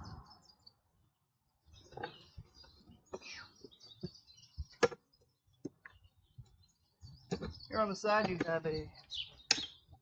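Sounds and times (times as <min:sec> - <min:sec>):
faint birds chirping: 0:00.0 - 0:10.0.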